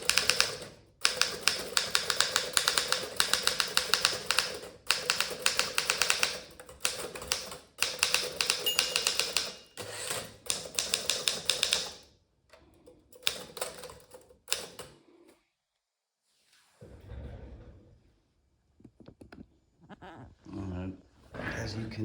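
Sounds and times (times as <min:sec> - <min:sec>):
typewriter keystrokes: 0:00.0 - 0:12.0, 0:13.2 - 0:15.0.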